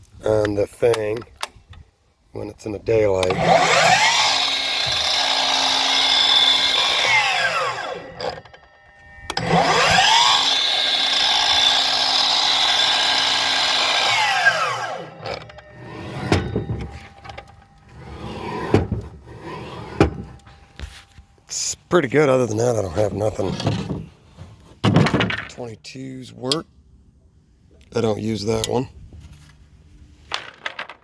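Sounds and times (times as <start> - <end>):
clunks: 3.1 - 21.5, 22.3 - 25.7
miter saw motor running: 3.3 - 16.6.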